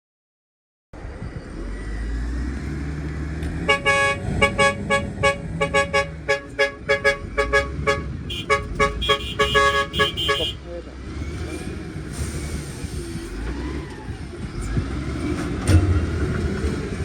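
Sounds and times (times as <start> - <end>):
heavy machine engine rumbling: 1.0 - 17.0
higher-pitched horn: 3.7 - 10.6
vehicle horn honking: 3.7 - 10.6.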